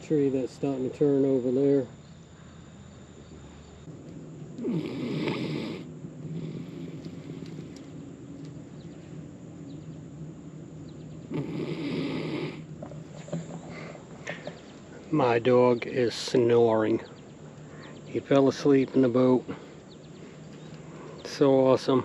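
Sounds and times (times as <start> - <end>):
dog snoring: 4.6 - 7.6, 11.3 - 12.7.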